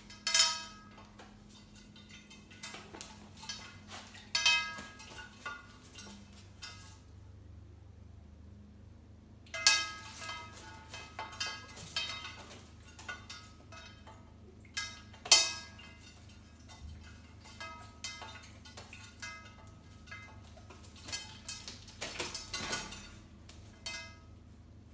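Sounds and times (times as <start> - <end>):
glass clinking under taps: 0.0 - 7.0, 9.6 - 24.2.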